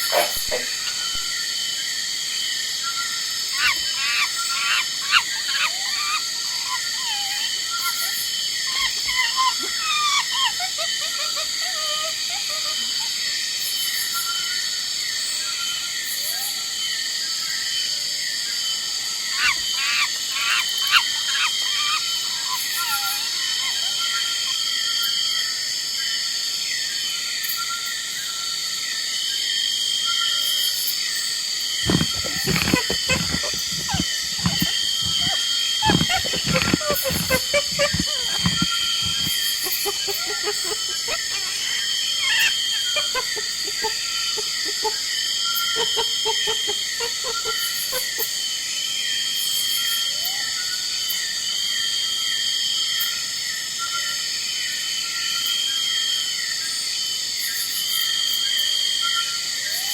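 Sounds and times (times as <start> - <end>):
faint pitched animal calls: 0.0 - 1.4, 31.8 - 48.3
loud sharp animal calls: 0.0 - 1.4, 31.8 - 48.3
insect chorus chirping: 0.0 - 59.9.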